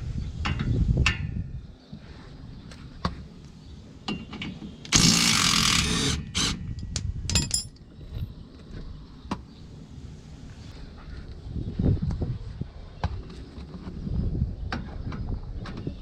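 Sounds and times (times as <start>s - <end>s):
power tool running: 4.9s - 6.6s
metallic tool clicks and knocks: 6.8s - 7.8s.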